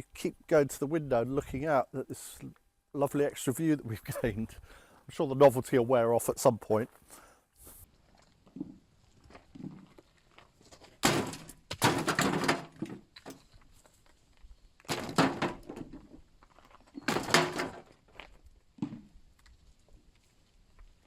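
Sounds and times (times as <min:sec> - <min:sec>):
knocks and scrapes: 0:07.6 - 0:21.0.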